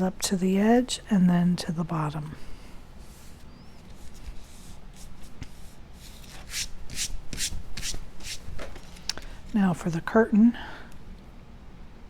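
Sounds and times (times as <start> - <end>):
fingers rubbing cardstock on paper: 3.0 - 8.4
quick brushing strokes: 3.0 - 8.6
paper handling rustles: 3.0 - 9.3.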